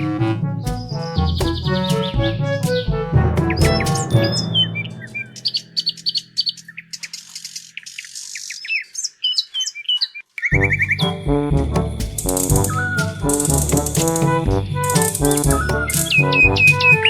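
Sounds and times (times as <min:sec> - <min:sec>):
held music chord: 0:00.0 - 0:06.2
bouncy music with rattling beat: 0:00.1 - 0:05.6, 0:10.6 - 0:17.0
birds chirping: 0:00.7 - 0:11.2.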